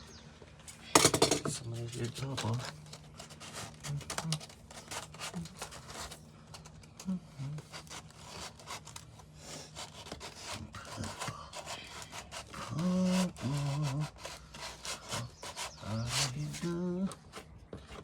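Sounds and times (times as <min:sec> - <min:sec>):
sandpaper rubbing: 0:02.2 - 0:06.2, 0:07.6 - 0:18.0
humming voice: 0:07.0 - 0:07.7, 0:12.5 - 0:14.2, 0:15.2 - 0:17.2.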